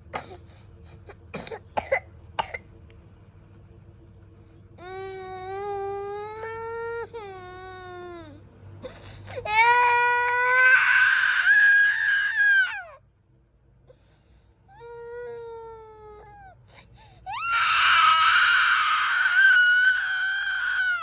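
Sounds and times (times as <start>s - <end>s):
toddler crying: 9.4s - 13.0s, 17.3s - 21.0s.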